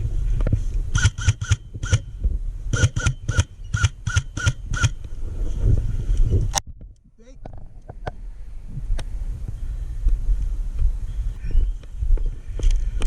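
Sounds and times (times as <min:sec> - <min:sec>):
low rumble of wind: 0:00.0 - 0:13.0
airsoft gun shots: 0:01.0 - 0:02.1, 0:02.7 - 0:05.0.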